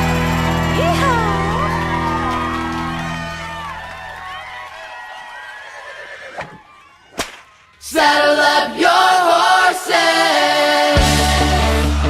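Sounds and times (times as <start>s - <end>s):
sharp cracks: 7.1s - 7.6s
group of voices singing: 7.8s - 12.0s.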